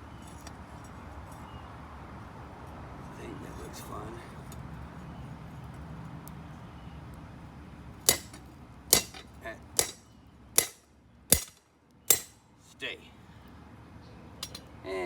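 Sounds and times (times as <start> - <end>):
hammer striking steel on anvil: 8.1 - 10.0, 10.6 - 12.4.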